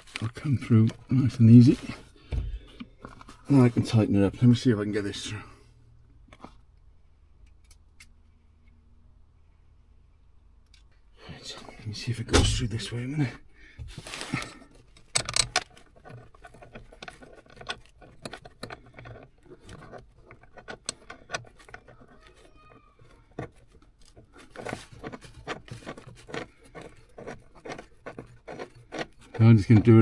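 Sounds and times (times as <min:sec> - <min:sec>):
small metallic clicks and knocks: 0:07.4 - 0:08.8, 0:14.5 - 0:30.0.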